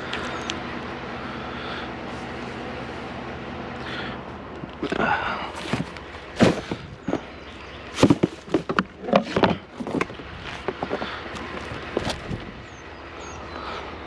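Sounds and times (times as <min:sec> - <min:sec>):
items knocking and clunking: 0:04.8 - 0:07.3, 0:07.9 - 0:12.3.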